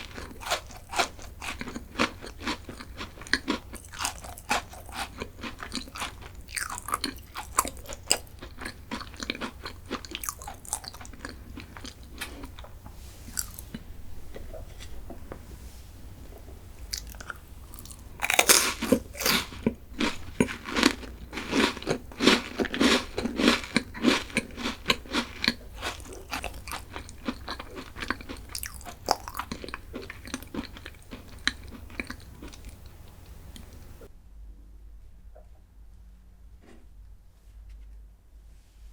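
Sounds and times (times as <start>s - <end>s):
crunchy biting and chewing: 0.0s - 12.6s, 13.2s - 13.8s, 16.8s - 34.0s.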